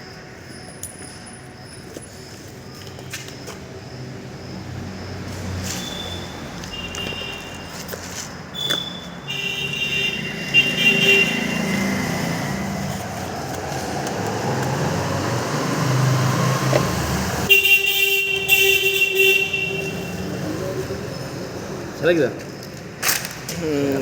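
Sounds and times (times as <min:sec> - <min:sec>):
vehicle engine passing: 0:04.0 - 0:08.5, 0:09.1 - 0:17.5, 0:18.2 - 0:24.0
vehicle horns honking: 0:05.6 - 0:12.8, 0:16.4 - 0:21.2.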